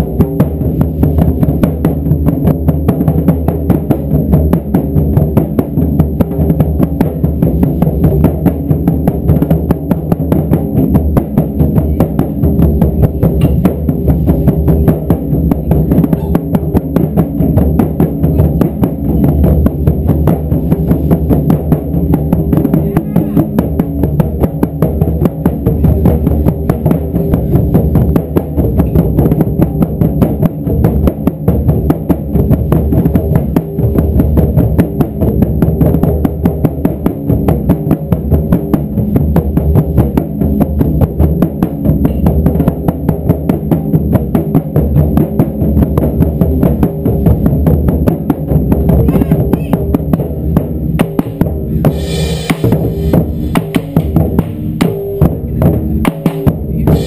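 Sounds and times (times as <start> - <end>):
taiko drums pounding: 0.0 - 57.0
bright sharp percussion layer: 49.0 - 57.0.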